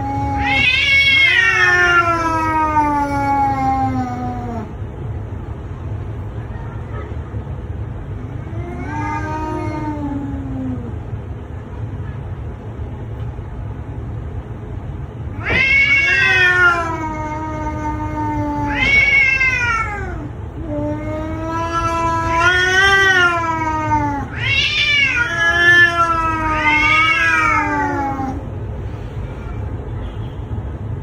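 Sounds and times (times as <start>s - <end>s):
cat yowling: 0.0s - 4.7s, 8.3s - 11.0s, 15.3s - 28.5s.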